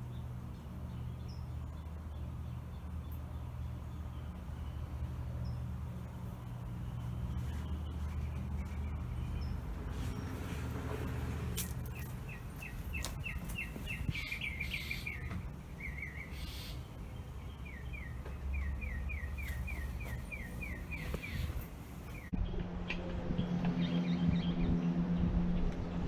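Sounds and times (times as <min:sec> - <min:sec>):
steady low hum: 0:00.0 - 0:26.0
steady low rumble: 0:00.0 - 0:26.0
songbird trilling: 0:11.5 - 0:22.3.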